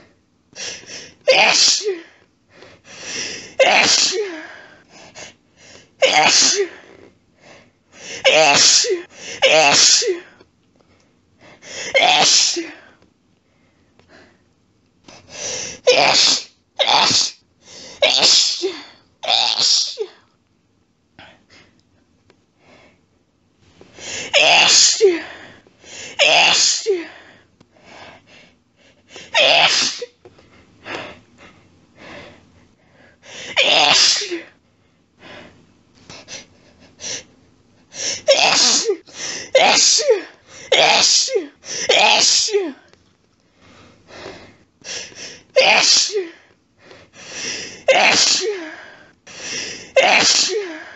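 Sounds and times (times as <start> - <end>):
woman sneezing: 1.3 - 2.1, 3.6 - 4.4, 6.0 - 6.8, 8.2 - 10.3, 11.9 - 12.8, 15.8 - 17.4, 18.0 - 20.2, 24.3 - 25.3, 26.1 - 27.1, 29.3 - 30.2, 33.5 - 34.5, 38.1 - 42.8, 45.6 - 46.4, 47.8 - 48.7, 49.9 - 50.9.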